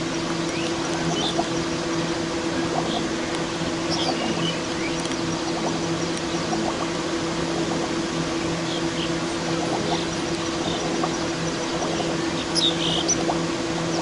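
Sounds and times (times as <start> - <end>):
low droning hum: 0.0 - 14.0
faint bird chirps: 8.6 - 13.2.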